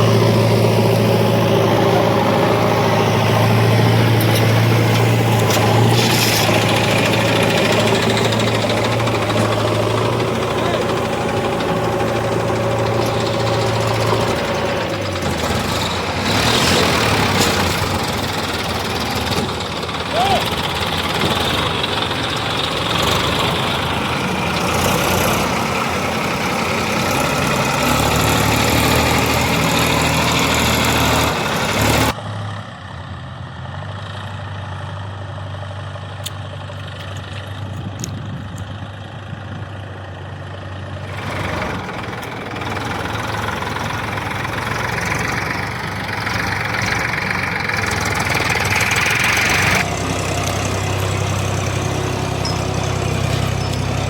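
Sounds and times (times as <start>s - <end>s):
heavy diesel machinery running: 0.0s - 54.0s
low engine hum: 0.0s - 54.0s.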